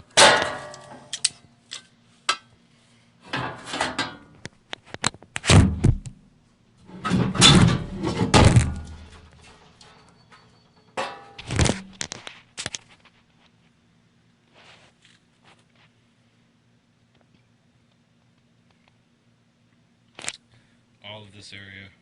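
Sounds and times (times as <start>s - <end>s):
sheet-metal panels clanking: 0.0s - 1.2s, 3.3s - 4.3s, 6.9s - 11.9s.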